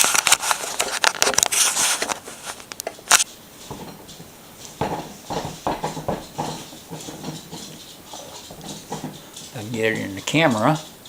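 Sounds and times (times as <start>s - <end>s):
handling rustling and clicks: 0.0s - 11.0s
soft thumps: 3.6s - 10.2s.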